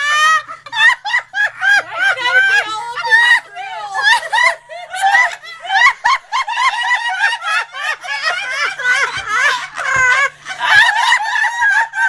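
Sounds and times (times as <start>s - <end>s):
women laughing: 0.0s - 12.0s.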